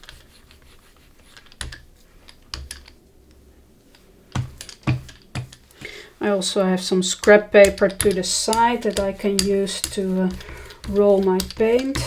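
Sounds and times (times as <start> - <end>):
painting tool tapping a gel plate: 4.4 - 5.9, 7.2 - 12.0.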